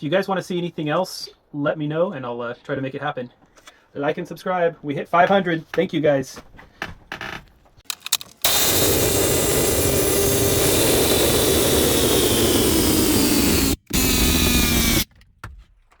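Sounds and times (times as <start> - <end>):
impact wrench hammering: 7.9 - 15.1.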